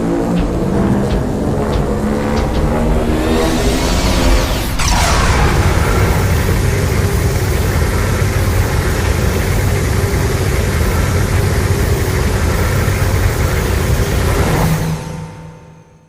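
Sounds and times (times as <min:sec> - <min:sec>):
monster roar low rumbling: 0:01.8 - 0:07.3.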